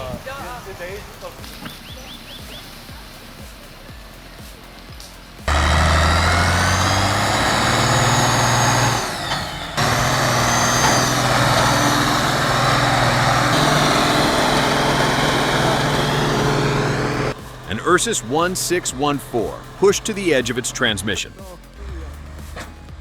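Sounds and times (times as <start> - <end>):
tractor diesel engine under load: 5.2 - 23.0.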